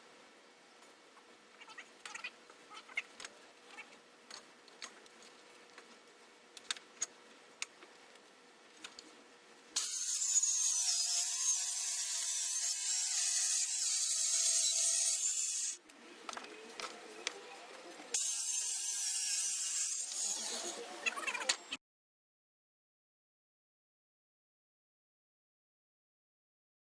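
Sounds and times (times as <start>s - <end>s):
drill cutting into plywood: 9.8s - 15.8s, 18.2s - 20.8s.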